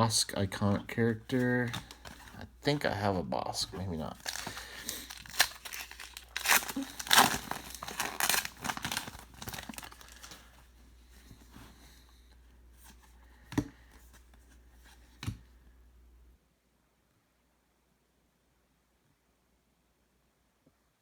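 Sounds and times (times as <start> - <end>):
foil wrapper crinkling and tearing: 3.8 - 10.7.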